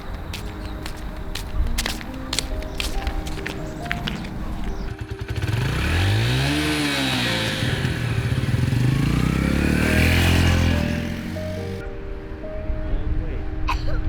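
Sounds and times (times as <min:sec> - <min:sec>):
vehicle engine revving: 0:04.2 - 0:11.8.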